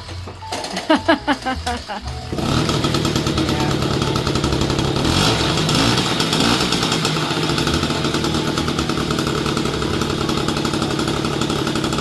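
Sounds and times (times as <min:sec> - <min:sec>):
moped engine buzzing: 0:00.5 - 0:12.0.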